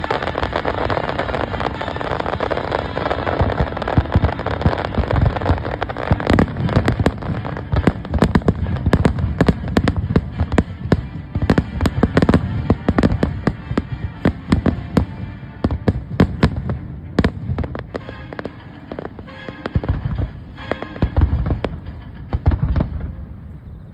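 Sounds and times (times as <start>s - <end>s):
fireworks bangs and crackles: 0.0s - 23.6s.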